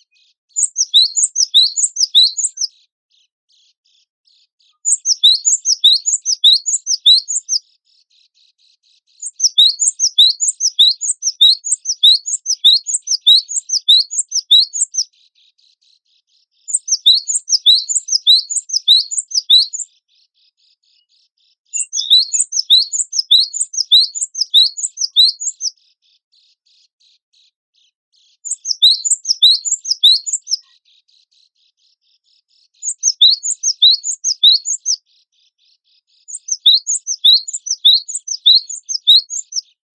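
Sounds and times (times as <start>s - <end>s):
bird singing whistled notes: 0.0s - 2.7s, 4.7s - 7.6s, 9.2s - 15.1s, 16.6s - 19.9s, 21.7s - 25.8s, 28.3s - 30.8s, 32.8s - 35.0s, 36.2s - 39.8s.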